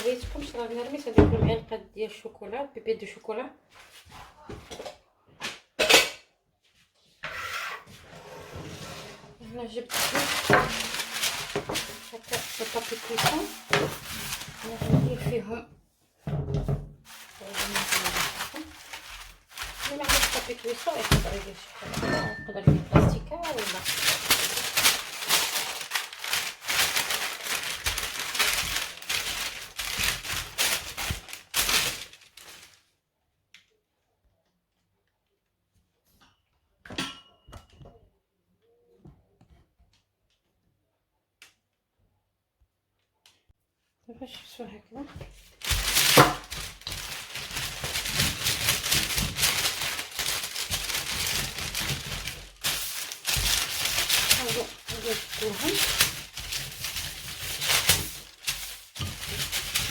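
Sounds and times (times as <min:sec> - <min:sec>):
baking paper crinkling: 0:00.0 - 0:01.2, 0:09.4 - 0:15.5, 0:17.0 - 0:32.9, 0:45.2 - 0:59.9.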